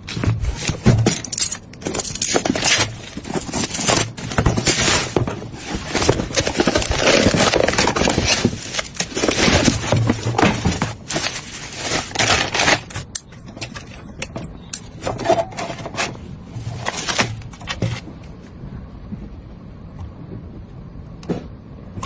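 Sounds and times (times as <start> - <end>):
computer parts clicking and rattling: 0.0 - 16.0.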